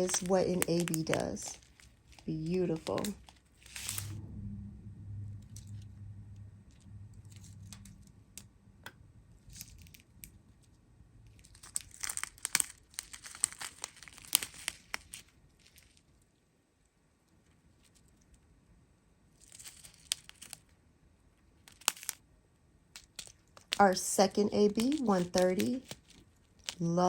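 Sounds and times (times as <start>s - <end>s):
plastic bags crinkling: 0.0s - 4.1s, 11.3s - 16.0s, 23.0s - 27.0s
faint low hum: 0.0s - 27.0s.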